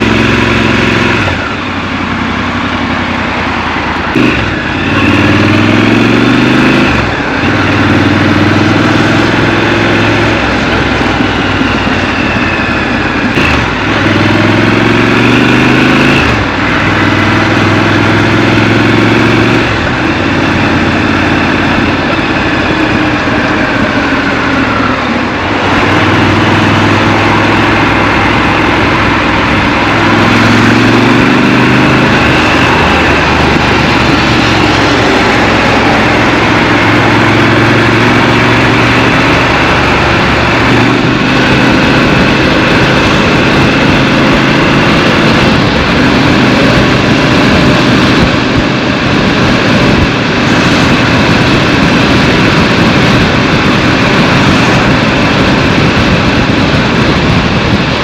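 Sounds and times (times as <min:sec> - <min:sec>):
motorcycle engine running: 0:00.0 - 0:58.0
wind and road noise: 0:00.0 - 0:58.0.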